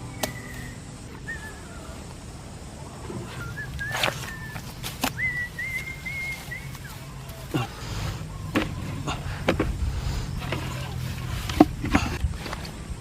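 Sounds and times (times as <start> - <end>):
high thin whistled notes: 0.0 - 2.1, 3.2 - 7.1.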